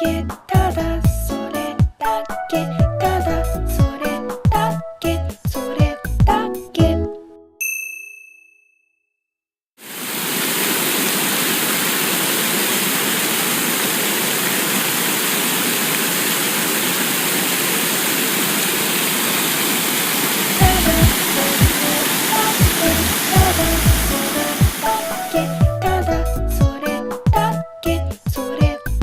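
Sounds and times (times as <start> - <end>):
music with a beat: 0.0 - 2.0, 2.8 - 7.0, 20.6 - 21.8, 23.4 - 29.0
bell-like ding: 7.6 - 9.0
steady rushing noise: 9.9 - 25.3.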